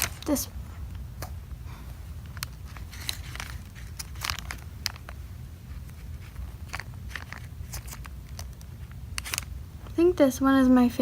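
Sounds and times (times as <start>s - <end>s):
plastic packaging rustling: 0.0s - 0.5s, 2.1s - 10.2s
low steady hum: 0.0s - 11.0s.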